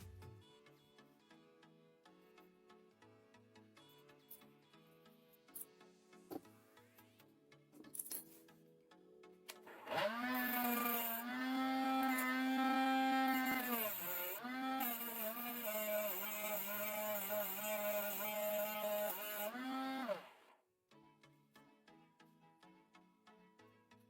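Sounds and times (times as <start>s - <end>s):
small motor running: 9.8s - 20.5s.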